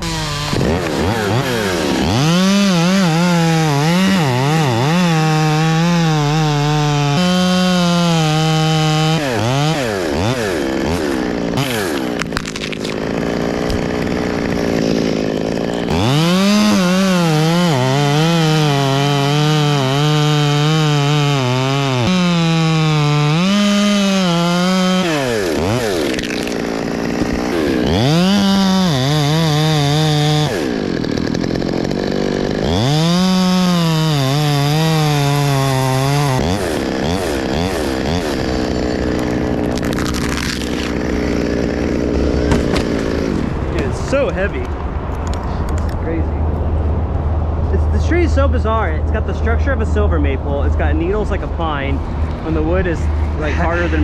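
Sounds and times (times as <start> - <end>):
chainsaw cutting hard wood: 0.0 - 44.8, 51.7 - 54.0.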